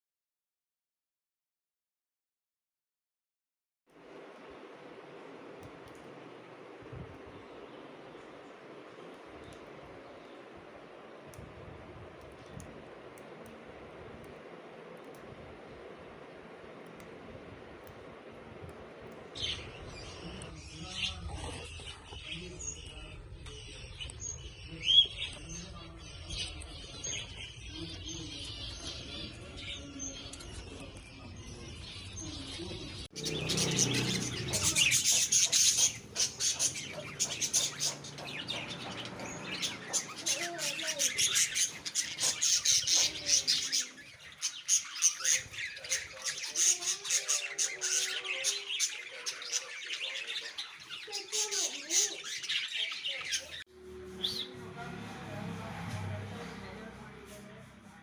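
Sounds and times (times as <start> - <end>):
cockatiels chirping and squawking: 33.1 - 53.6.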